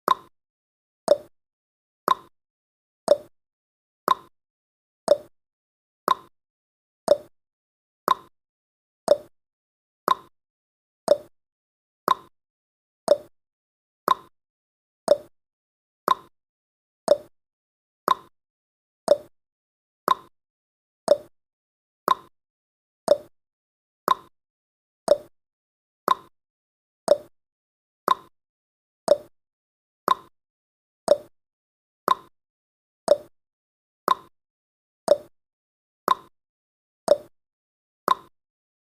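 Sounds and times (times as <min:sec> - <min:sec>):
clock ticking: 0:27.1 - 0:27.3, 0:29.1 - 0:29.3, 0:31.1 - 0:31.3, 0:33.1 - 0:33.3, 0:35.1 - 0:35.3, 0:37.1 - 0:37.3.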